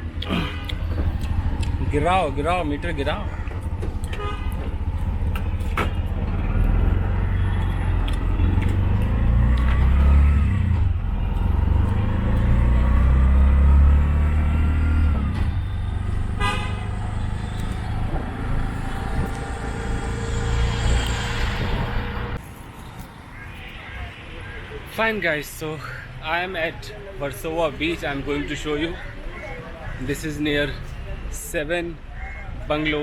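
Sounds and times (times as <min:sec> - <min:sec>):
engine rumble: 0:00.0 - 0:22.5
road traffic: 0:00.0 - 0:33.0
vehicle horn honking: 0:04.1 - 0:04.6, 0:16.2 - 0:17.3.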